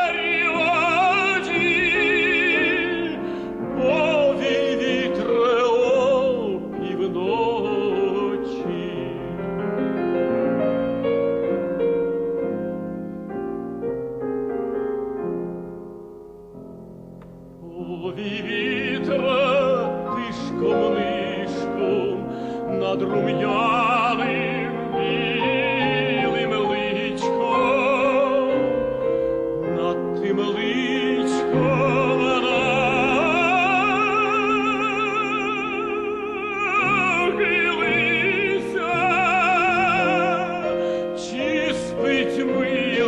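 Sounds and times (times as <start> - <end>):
tenor singing with vibrato: 0.0 - 10.2, 17.6 - 43.0
piano accompaniment: 0.0 - 43.0.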